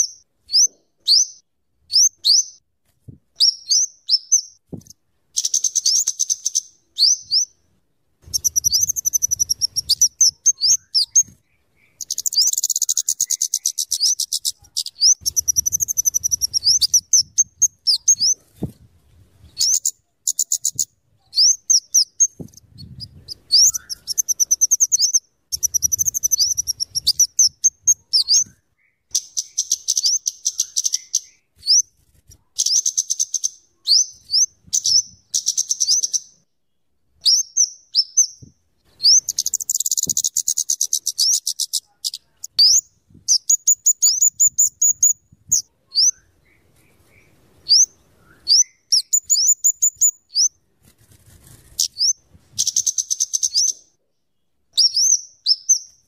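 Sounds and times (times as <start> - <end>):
bird singing high ticking notes: 5.4 - 7.6, 8.3 - 18.4, 19.6 - 31.4, 39.0 - 46.7, 47.6 - 50.6.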